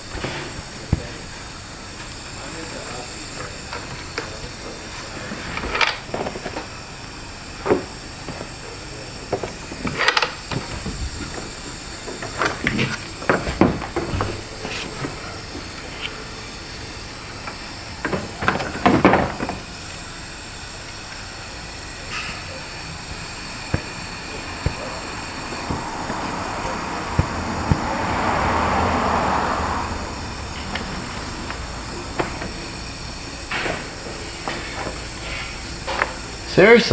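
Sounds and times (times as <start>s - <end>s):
compressed air hissing: 0.0s - 36.9s
tools and parts clattering: 3.4s - 6.8s, 9.2s - 16.5s, 17.3s - 19.9s.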